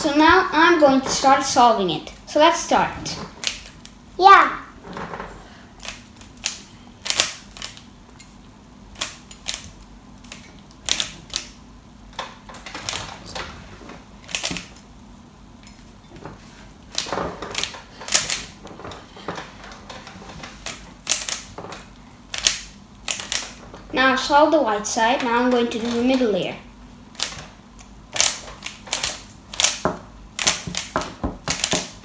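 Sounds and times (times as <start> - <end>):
puzzle cube plastic clicking: 20.6 - 21.6, 22.3 - 23.6, 27.2 - 32.0.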